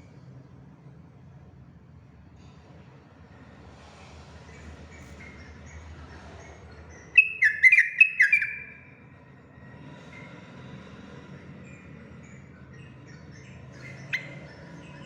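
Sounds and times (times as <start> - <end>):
faint bird chirps: 4.5 - 9.1, 10.0 - 15.0
bird singing descending notes: 6.9 - 8.9.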